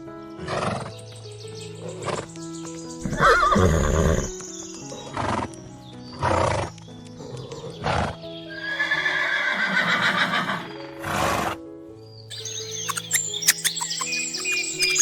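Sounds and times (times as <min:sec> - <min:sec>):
background music: 0:00.0 - 0:15.0
horse neighing: 0:03.1 - 0:04.3, 0:07.8 - 0:11.5.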